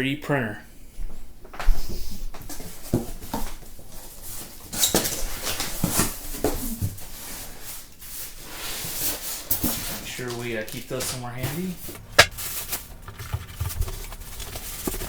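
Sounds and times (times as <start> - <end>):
cardboard box scraping and rustling: 12.3 - 15.0.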